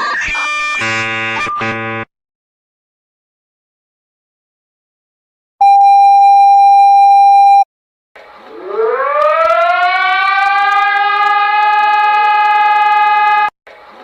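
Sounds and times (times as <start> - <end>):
harsh alarm tone: 5.6 - 7.6, 8.6 - 13.5
civil defense siren wailing: 8.5 - 13.5.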